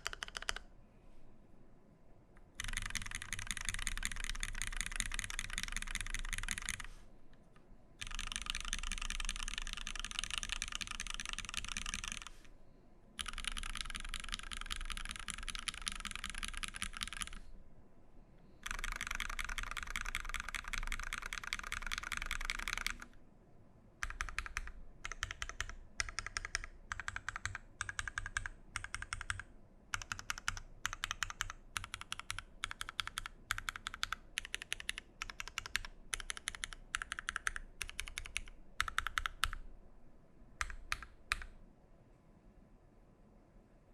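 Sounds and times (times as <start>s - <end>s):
fast typing on mechanical keyboard: 0.0s - 0.6s, 2.5s - 6.9s, 8.0s - 12.4s, 13.2s - 17.4s, 18.6s - 23.2s, 24.0s - 39.6s, 40.6s - 41.6s.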